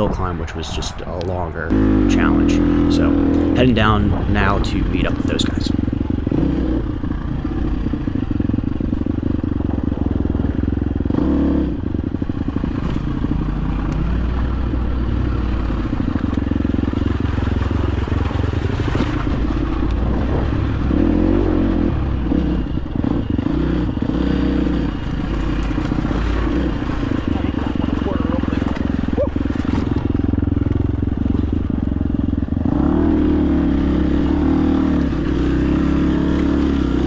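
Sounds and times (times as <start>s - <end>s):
dirt bike engine running: 0.0s - 37.0s
bike rattling over rough ground: 11.8s - 34.5s.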